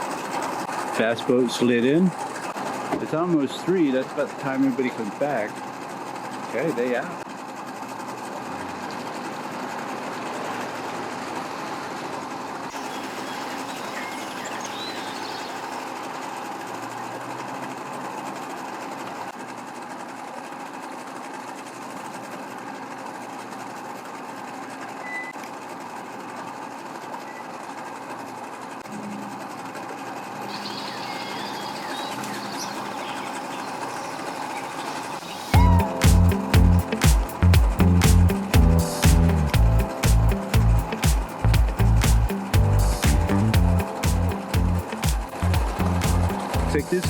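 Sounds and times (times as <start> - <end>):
boat motors running: 28.8 - 47.0.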